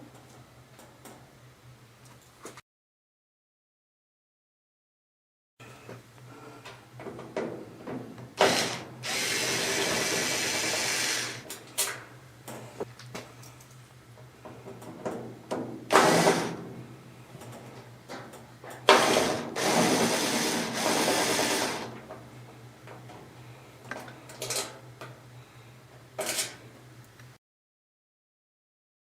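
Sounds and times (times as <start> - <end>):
small electric motor whirring: 8.4 - 11.4.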